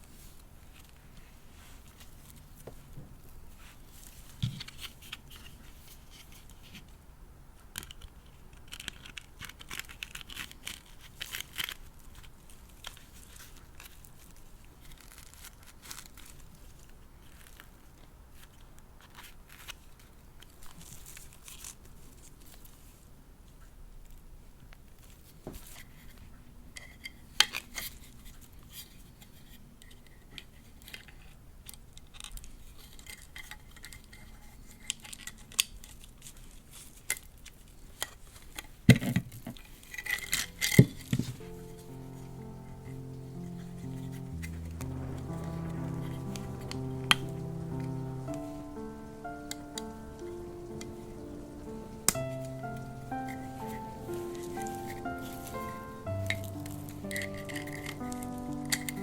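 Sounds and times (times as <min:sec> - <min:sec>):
packaging rustling and crinkling: 0:07.8 - 0:22.8.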